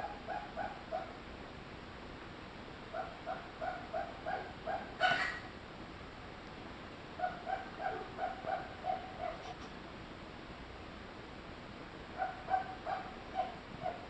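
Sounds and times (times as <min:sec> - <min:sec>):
rabbit sneezing: 0:05.0 - 0:05.5
short repeated squeaks: 0:05.0 - 0:05.5.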